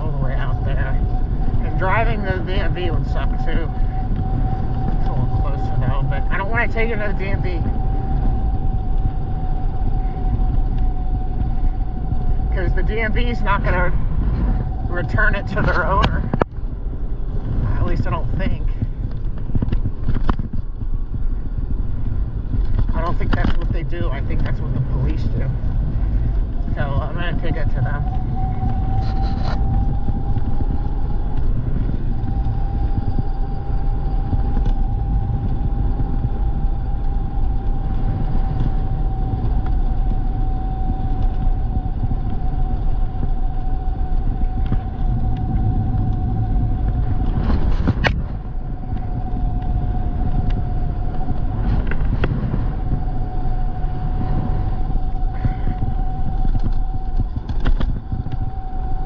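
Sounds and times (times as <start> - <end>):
tyres rumbling: 0.0 - 59.0
wind on microphone: 0.0 - 59.0
electric motor whine: 23.5 - 59.0.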